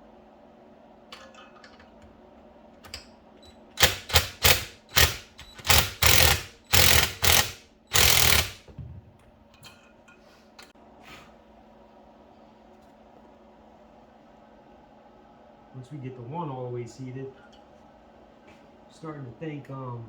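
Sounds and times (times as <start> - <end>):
rapid mechanical rattling: 3.8 - 8.6.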